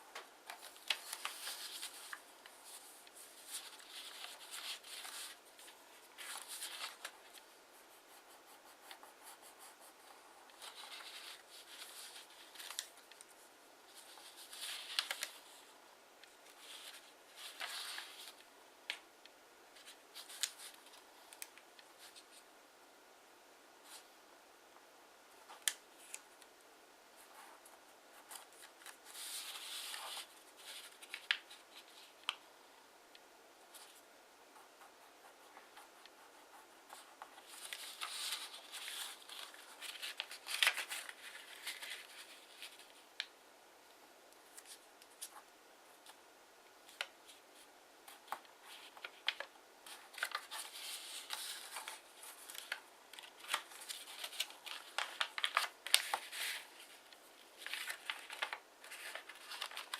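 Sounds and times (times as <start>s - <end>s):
paper being folded and creased: 0.1s - 7.5s, 10.0s - 13.3s, 13.9s - 15.6s, 16.4s - 19.0s, 36.9s - 43.0s, 48.1s - 59.9s.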